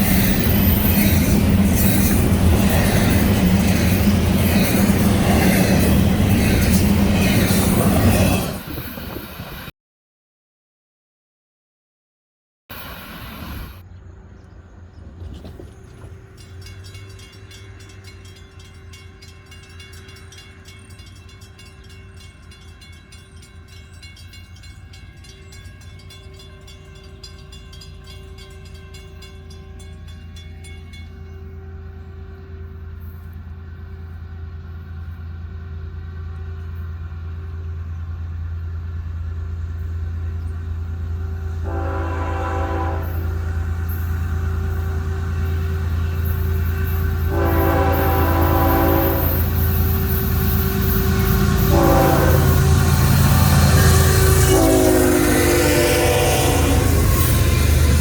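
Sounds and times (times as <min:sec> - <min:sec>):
diesel locomotive engine rumble: 0:00.0 - 0:09.7, 0:12.7 - 0:58.0
multi-tone train horn: 0:29.5 - 0:39.1, 0:40.8 - 0:58.0.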